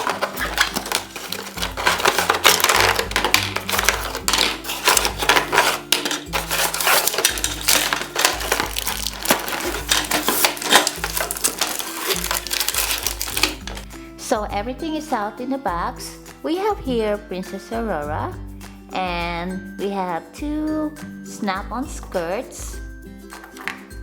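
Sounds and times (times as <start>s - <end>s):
plastic toy pieces rattling: 0.0s - 13.8s
background music: 0.0s - 24.0s.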